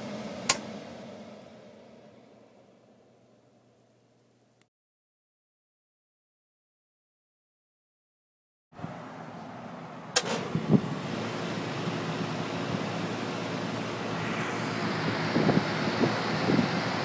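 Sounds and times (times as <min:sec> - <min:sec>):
blower motor humming: 0:00.0 - 0:03.2, 0:10.2 - 0:17.0
rush of air: 0:14.0 - 0:17.0.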